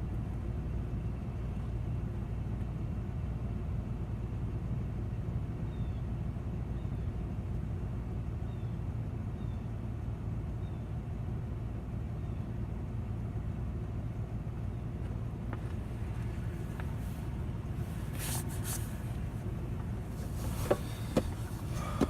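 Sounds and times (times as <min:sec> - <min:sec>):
car engine rumbling: 0:00.0 - 0:22.0
brief rustles: 0:15.6 - 0:19.2, 0:20.1 - 0:22.0.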